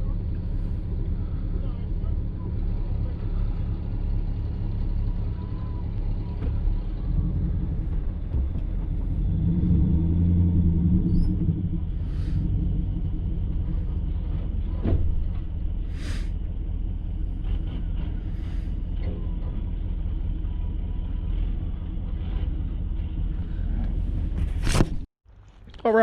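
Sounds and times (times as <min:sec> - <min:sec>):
pickup truck engine rumbling: 0:00.0 - 0:25.8
short hisses: 0:15.9 - 0:16.4.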